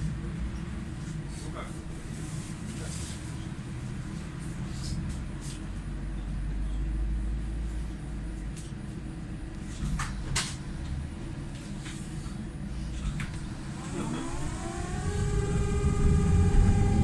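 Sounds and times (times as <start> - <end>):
vehicle cabin rumble: 4.6 - 17.0.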